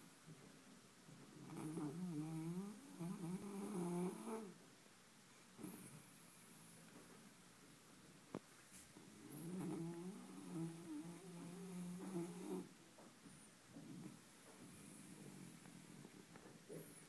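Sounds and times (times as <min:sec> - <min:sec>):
dog snoring: 0:01.3 - 0:04.6, 0:05.6 - 0:06.8, 0:09.1 - 0:12.7, 0:13.8 - 0:16.1.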